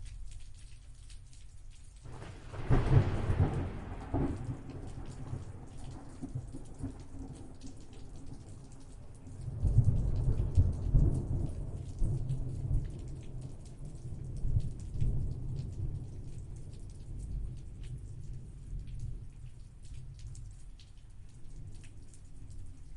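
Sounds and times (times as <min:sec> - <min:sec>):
rain pattering: 0:00.0 - 0:22.9
rolling thunder rumble: 0:02.1 - 0:07.6.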